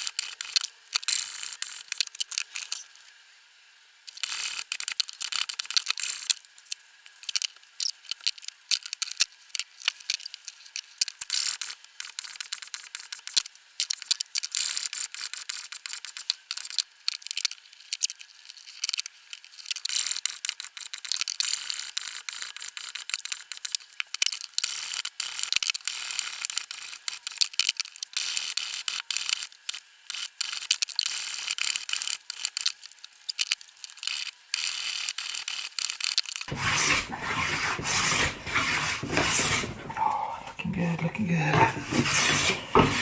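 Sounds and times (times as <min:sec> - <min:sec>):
hand plane scraping wood: 0:36.5 - 0:40.0, 0:41.8 - 0:43.0.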